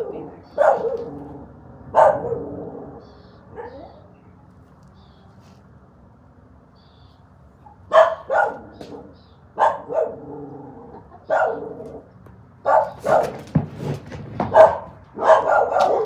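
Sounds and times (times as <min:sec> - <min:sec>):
dog barking sharply: 0:00.0 - 0:01.3, 0:02.0 - 0:02.6, 0:07.7 - 0:10.4, 0:11.2 - 0:12.0, 0:12.6 - 0:13.5, 0:14.5 - 0:16.0.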